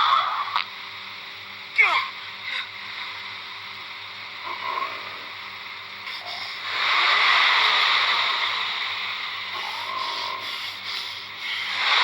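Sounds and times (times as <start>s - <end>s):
stomach growling and gurgling: 4.4s - 5.2s.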